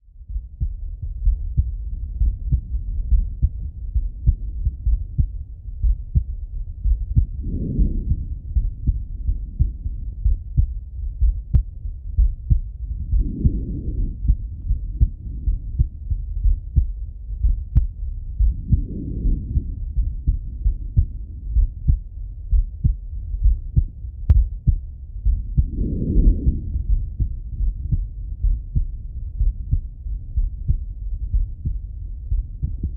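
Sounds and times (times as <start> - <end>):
heartbeat through stethoscope: 0.0 - 32.9
soft breath sounds: 6.2 - 22.7.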